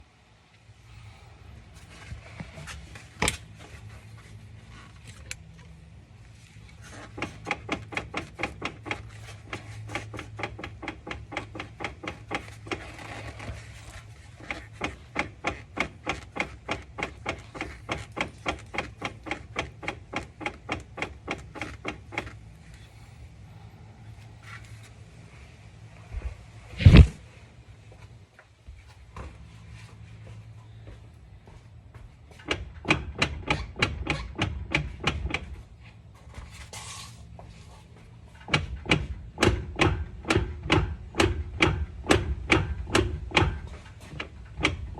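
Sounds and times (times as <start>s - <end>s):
metal clicking from drivetrain: 6.8s - 22.9s, 32.4s - 35.6s, 38.3s - 44.9s.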